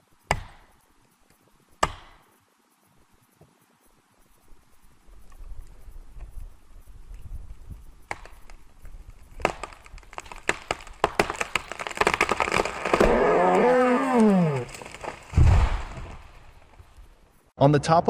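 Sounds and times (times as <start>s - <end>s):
wood cracking and splintering: 8.1s - 17.2s
creaking groan of wood: 9.4s - 16.8s.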